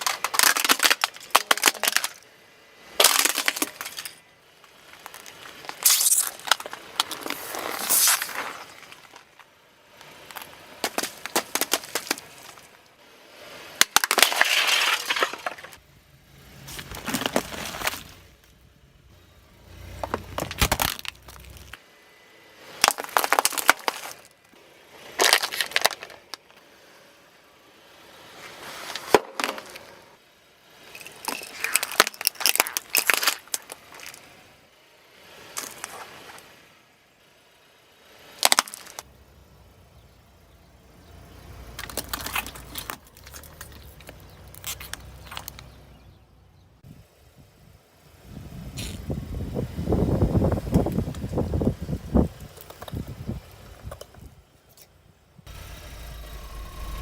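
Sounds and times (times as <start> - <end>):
brittle objects crunching under tyres: 0.0 - 21.9, 22.6 - 26.7, 28.2 - 34.6, 35.2 - 36.7, 38.2 - 46.2, 48.5 - 57.0
low rumble: 55.5 - 57.0.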